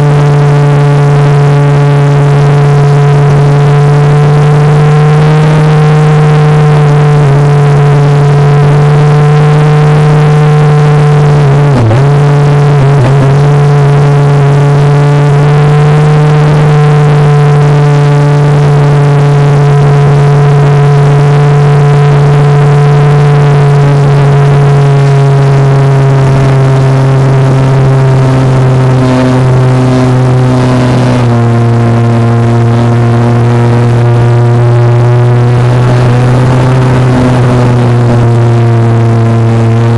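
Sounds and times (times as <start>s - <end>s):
model plane motor whine: 22.8s - 39.9s.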